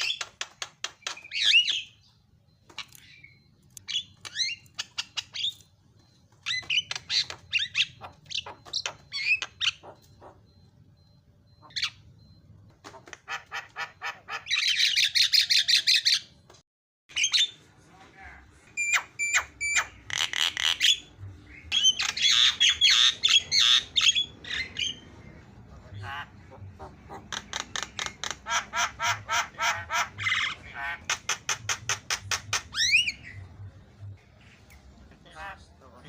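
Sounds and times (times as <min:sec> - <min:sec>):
myna bird squawking and whistling: 0:12.9 - 0:16.3, 0:18.8 - 0:25.1, 0:25.9 - 0:33.4.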